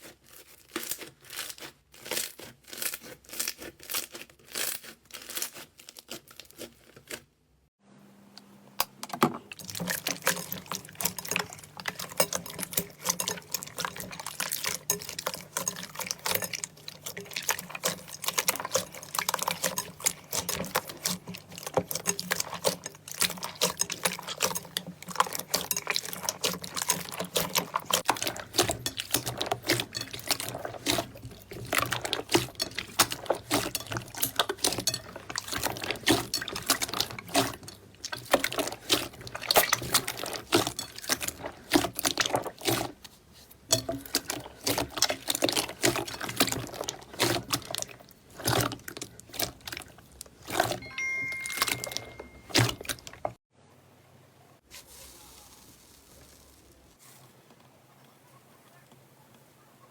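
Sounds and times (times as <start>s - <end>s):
slime squishing by hand: 8.8s - 53.4s.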